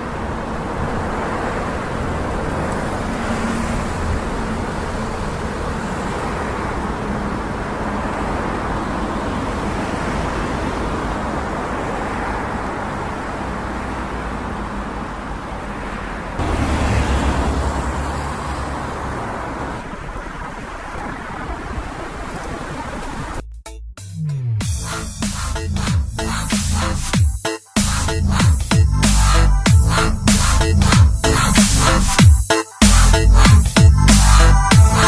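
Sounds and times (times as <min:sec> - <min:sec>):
cars going by: 0:00.0 - 0:23.4, 0:29.0 - 0:32.2
loud vehicle passing: 0:00.0 - 0:23.4.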